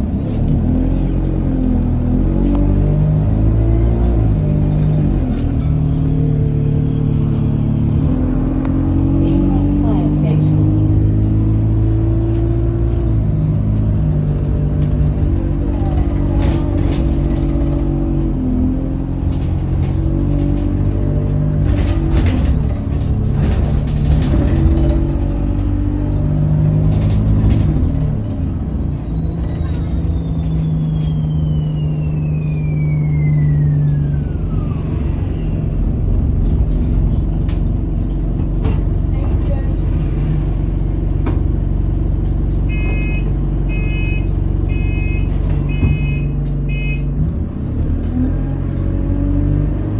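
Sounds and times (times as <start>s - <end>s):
bus diesel engine running: 0.0s - 49.9s
turbocharger whistle: 30.1s - 36.3s, 42.7s - 47.1s
high turbo whistle: 42.7s - 47.1s.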